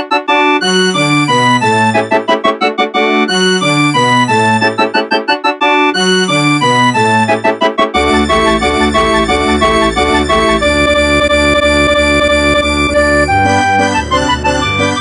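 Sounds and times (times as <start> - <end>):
polyphonic phone ringtone: 7.2 - 15.0.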